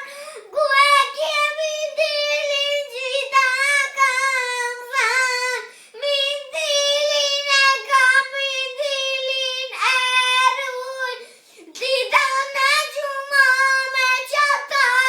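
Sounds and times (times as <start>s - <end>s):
child breathing: 0.0s - 0.6s, 5.6s - 6.0s, 11.2s - 11.8s
child singing alone: 0.0s - 15.0s.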